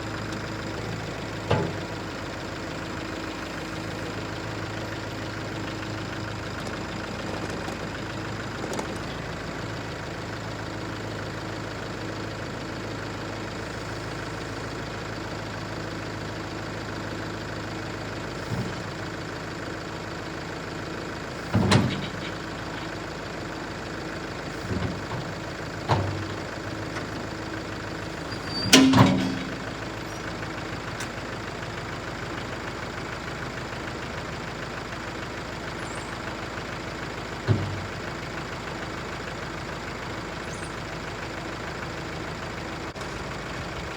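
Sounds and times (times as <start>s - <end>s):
tractor engine idling: 0.0s - 43.9s.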